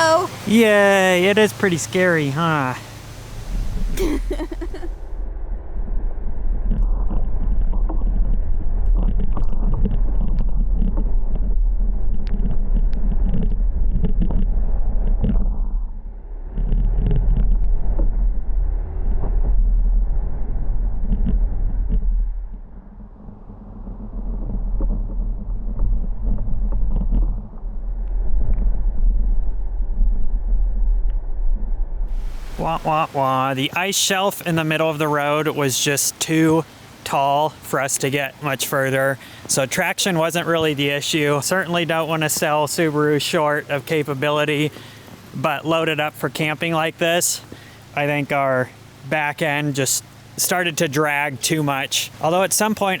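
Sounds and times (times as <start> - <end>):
car engine rumble: 0.0 - 33.8.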